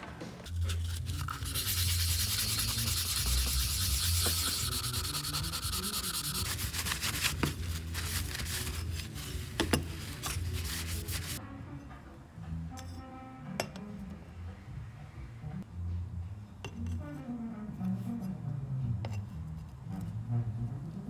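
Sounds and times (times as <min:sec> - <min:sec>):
hand sanding scratchy hiss: 0:00.5 - 0:11.4.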